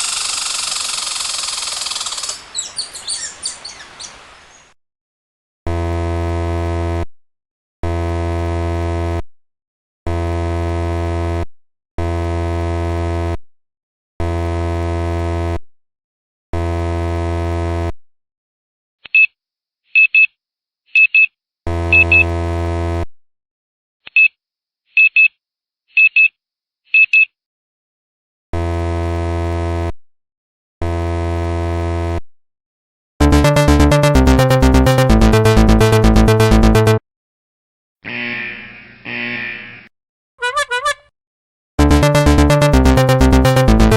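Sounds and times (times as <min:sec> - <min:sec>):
low electronic buzzer: 0:05.7 - 0:07.1, 0:07.8 - 0:09.3, 0:10.1 - 0:13.4, 0:14.2 - 0:15.6, 0:16.6 - 0:18.0, 0:21.7 - 0:23.1, 0:28.6 - 0:30.0, 0:30.8 - 0:32.2, 0:33.2 - 0:37.0, 0:38.0 - 0:39.9, 0:41.8 - 0:43.9
short high beeps: 0:22.0 - 0:22.2.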